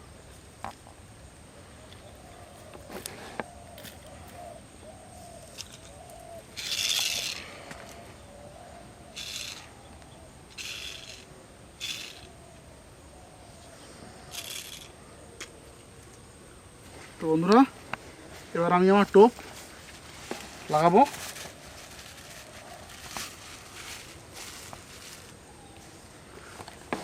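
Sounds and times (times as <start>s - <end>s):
high insect whine: 0.0s - 27.0s
bird hooting: 1.6s - 16.7s
hissy rustles: 16.8s - 27.0s.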